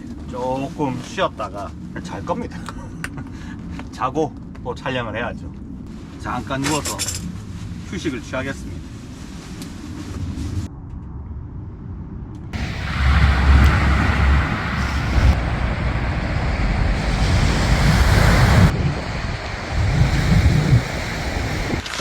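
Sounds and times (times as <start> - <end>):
wind buffeting microphone: 9.8 - 21.8
surf washing on beach: 12.6 - 22.0.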